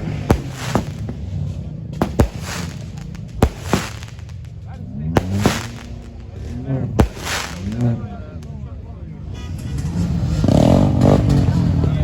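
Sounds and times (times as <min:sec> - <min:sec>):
fireworks hiss: 0:00.0 - 0:04.6, 0:05.2 - 0:06.4, 0:07.0 - 0:08.4
fireworks bangs: 0:00.0 - 0:08.8.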